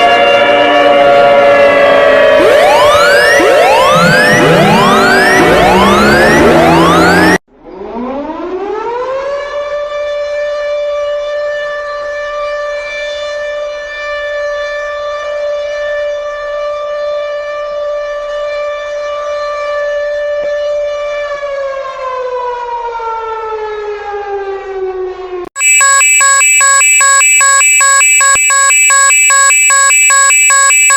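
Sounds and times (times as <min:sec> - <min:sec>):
civil defense siren wailing: 0:00.0 - 0:12.7, 0:20.4 - 0:25.2
chopped electronic alert tone: 0:02.4 - 0:07.4, 0:25.6 - 0:30.9.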